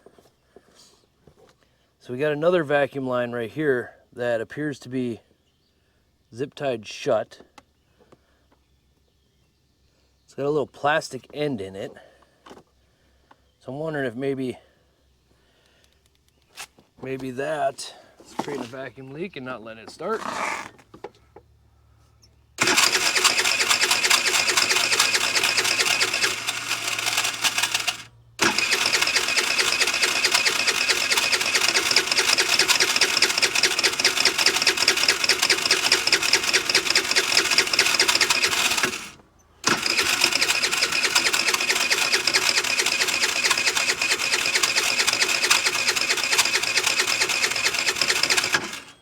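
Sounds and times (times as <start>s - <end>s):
scooter starter cranking: 22.6s - 49.0s.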